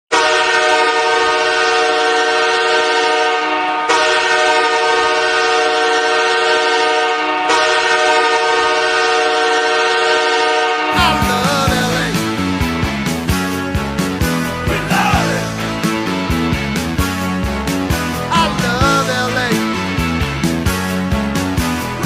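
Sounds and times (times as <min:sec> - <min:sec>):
arena goal horn blasts: 0:00.1 - 0:12.1.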